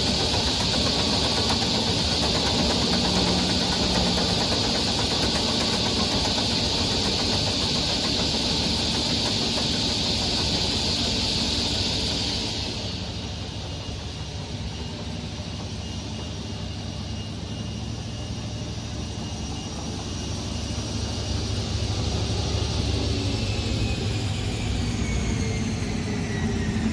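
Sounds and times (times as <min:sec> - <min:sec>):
loud hiss: 0:00.0 - 0:13.8
saw machine running: 0:00.0 - 0:15.6.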